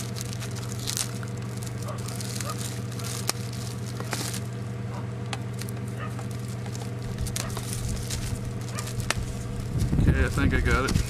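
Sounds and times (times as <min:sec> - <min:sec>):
plastic packaging crinkling: 0:00.0 - 0:04.7, 0:05.4 - 0:11.0
steady low hum: 0:00.0 - 0:11.0.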